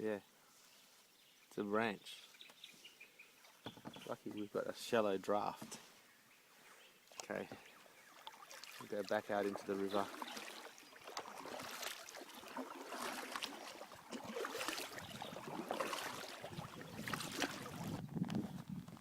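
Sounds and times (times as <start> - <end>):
kayak paddles splashing in water: 7.1 - 18.0.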